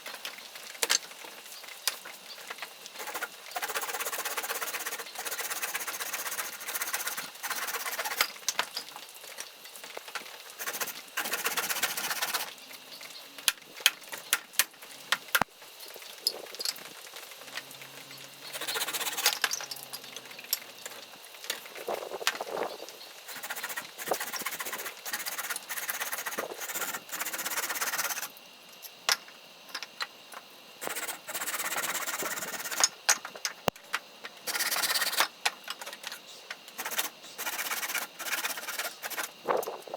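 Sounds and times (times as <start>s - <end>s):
hand saw cutting wood: 3.0s - 8.3s, 10.6s - 12.5s, 18.6s - 19.4s, 23.3s - 28.3s, 30.8s - 32.8s, 34.5s - 35.3s, 36.8s - 39.4s.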